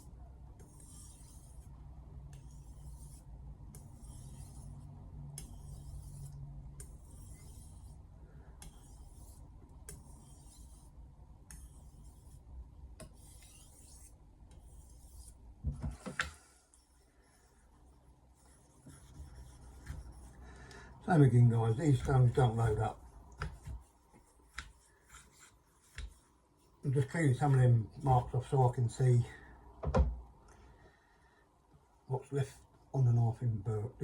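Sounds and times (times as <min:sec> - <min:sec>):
knife rasping on whetstone: 0:00.6 - 0:01.7, 0:02.3 - 0:08.0, 0:08.6 - 0:15.4, 0:21.6 - 0:26.2.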